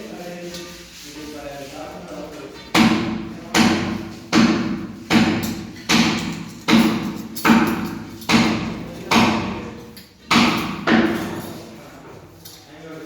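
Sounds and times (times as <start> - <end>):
hammer blows ringing: 2.7 - 11.5.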